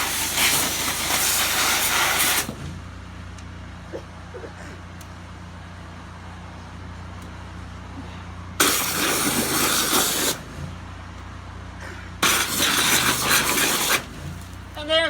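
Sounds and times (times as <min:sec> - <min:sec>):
high-pressure water jet bursts: 0:00.0 - 0:02.8, 0:08.6 - 0:10.7, 0:12.2 - 0:15.0
pressure washer humming: 0:00.0 - 0:03.4, 0:08.6 - 0:11.0, 0:12.2 - 0:15.0.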